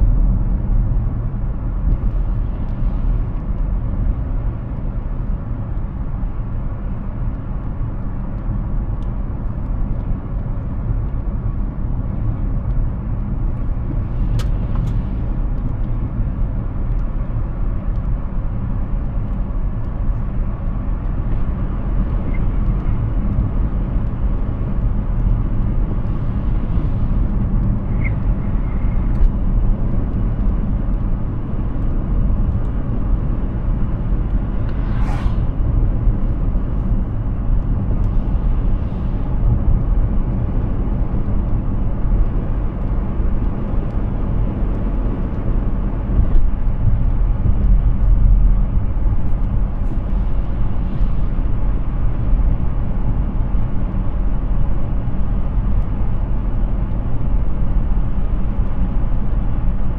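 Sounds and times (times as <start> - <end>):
road and tyre rumble: 0.0 - 59.9
brief whoosh: 34.3 - 37.0.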